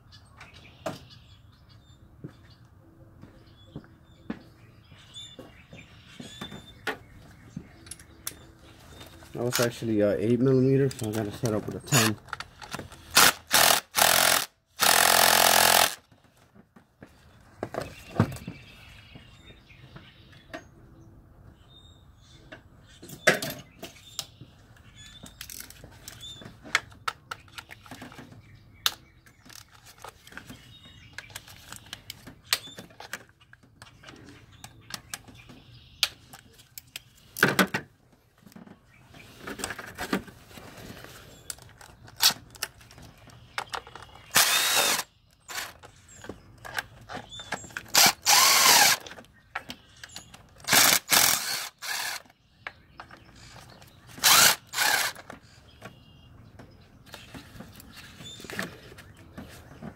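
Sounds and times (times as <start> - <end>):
power tool spinning out bolts: 13.2 - 16.0, 44.3 - 45.8, 47.9 - 49.0, 50.7 - 52.2, 54.2 - 55.2.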